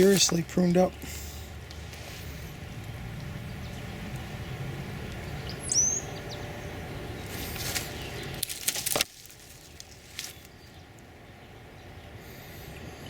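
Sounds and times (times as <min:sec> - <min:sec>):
low outdoor background noise: 0:00.0 - 0:13.0
high bird chirp: 0:03.6 - 0:08.4.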